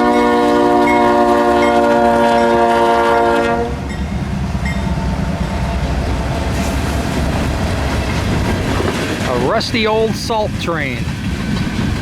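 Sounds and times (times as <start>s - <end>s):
locomotive air horn: 0.0s - 3.9s
train cars rolling on rails: 0.0s - 12.0s.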